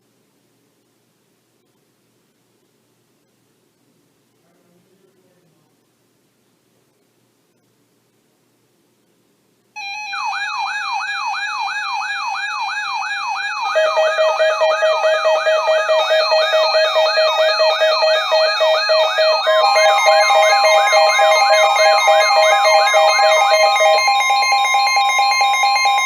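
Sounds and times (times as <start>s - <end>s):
electronic siren sweeping: 9.8s - 26.0s
steady electronic tones: 9.8s - 26.0s.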